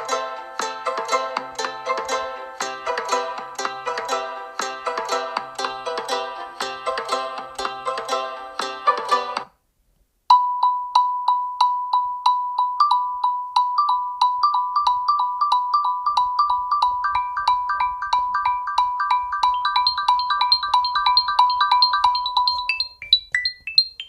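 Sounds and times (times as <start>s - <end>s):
marimba-like phone ringtone: 10.3s - 24.0s.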